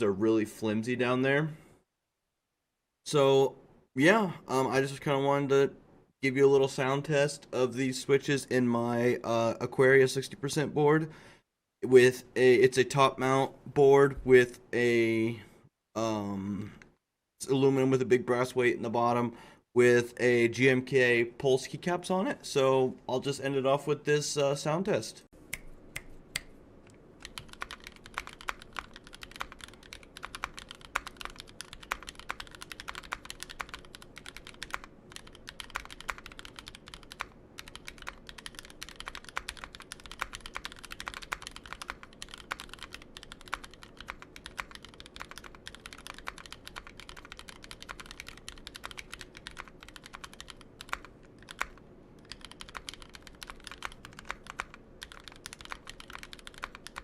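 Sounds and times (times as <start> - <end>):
mechanical keyboard typing: 27.2 - 57.0.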